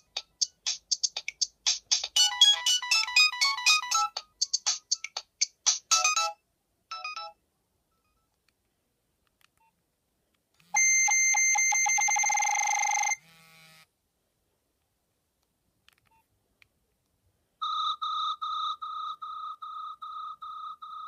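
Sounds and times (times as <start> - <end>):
loud electronic ringtone: 2.2 - 4.2, 5.9 - 7.3, 10.8 - 13.2, 17.6 - 21.0.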